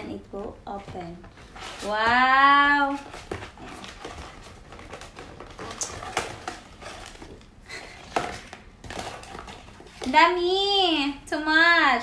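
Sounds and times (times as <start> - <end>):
packaging rustling: 1.2 - 10.2.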